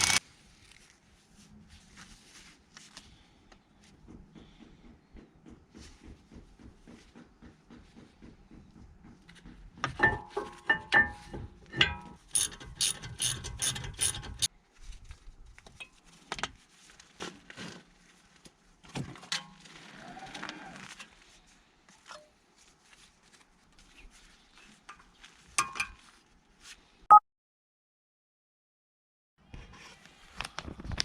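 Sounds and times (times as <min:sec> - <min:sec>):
ratchet wrench clicking: 0:00.0 - 0:00.2, 0:12.3 - 0:14.5
metallic clatter of tools: 0:10.0 - 0:14.5.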